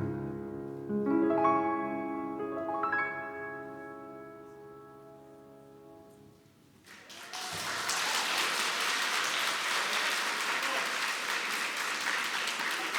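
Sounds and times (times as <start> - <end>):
piano chord: 0.0 - 6.4
audience applause: 6.8 - 12.9.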